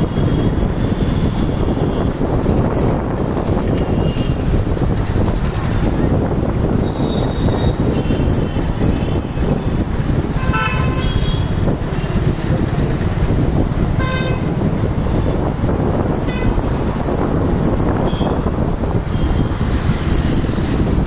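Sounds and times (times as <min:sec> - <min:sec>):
traffic rumble: 0:00.0 - 0:21.0
wind on microphone: 0:00.0 - 0:21.0
vehicle horns honking: 0:10.3 - 0:11.6, 0:14.0 - 0:14.6, 0:16.2 - 0:16.7, 0:18.0 - 0:18.4.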